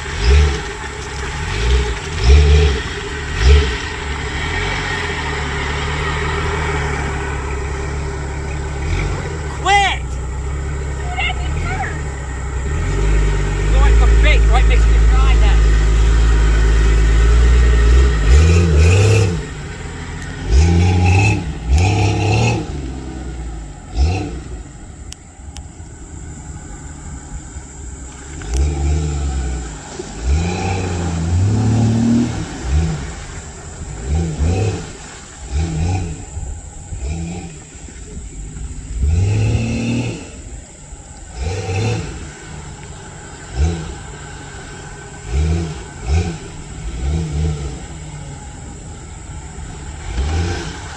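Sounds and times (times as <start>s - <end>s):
off-road vehicle engine revving: 0.0s - 50.9s.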